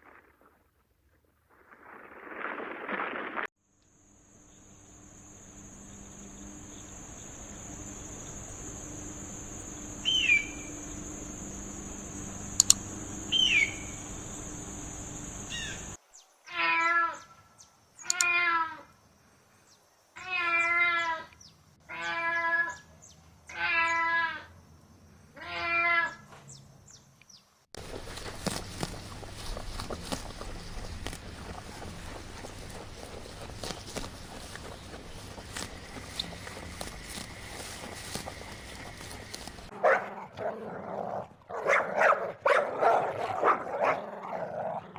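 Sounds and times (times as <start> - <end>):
steady hiss: 4.1 - 16.0, 27.8 - 39.7
animal calling with wavering pitch: 4.5 - 16.0
short falling chirps: 6.4 - 16.0.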